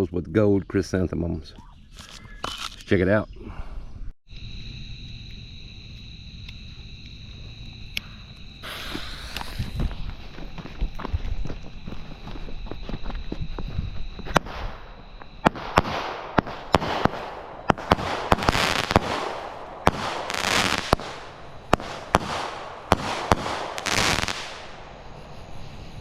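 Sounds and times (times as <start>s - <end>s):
firework bangs and pops: 8.6s - 10.2s, 14.2s - 25.1s
firework hissing: 8.6s - 10.2s, 15.4s - 26.0s.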